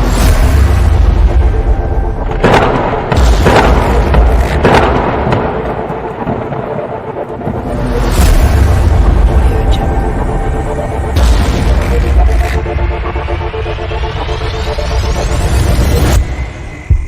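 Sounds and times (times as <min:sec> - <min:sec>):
sharp thunder cracks: 0:02.3 - 0:06.7.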